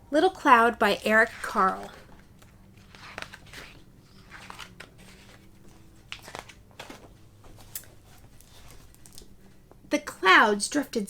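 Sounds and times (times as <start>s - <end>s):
paper rustling: 0.9s - 9.4s
book pages turning with clicks: 1.0s - 9.3s.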